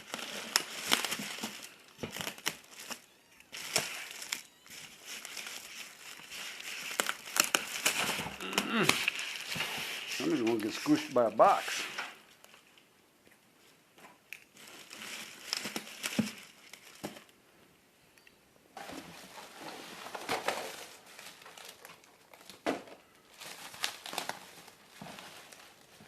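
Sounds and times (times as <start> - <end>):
bubble wrap crinkling: 0.0 - 12.9, 13.6 - 17.4, 18.8 - 26.0.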